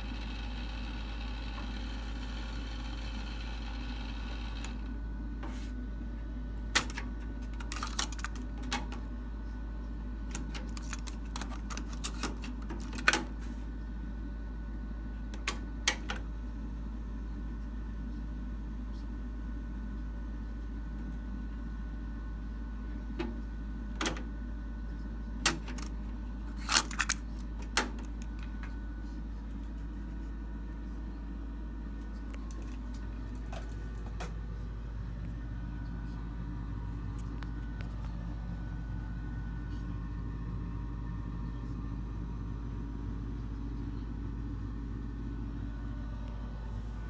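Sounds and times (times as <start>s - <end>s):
steady low hum: 0.0s - 47.0s
cassette deck keys clicking: 6.8s - 9.1s, 10.3s - 13.4s, 15.4s - 16.3s, 25.5s - 28.8s, 32.3s - 34.4s.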